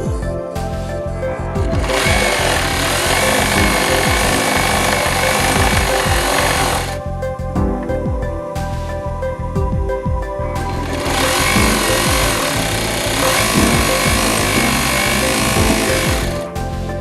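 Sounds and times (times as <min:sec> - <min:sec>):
background music: 0:00.0 - 0:17.0
industrial sewing machine running: 0:01.9 - 0:07.0, 0:11.0 - 0:16.4.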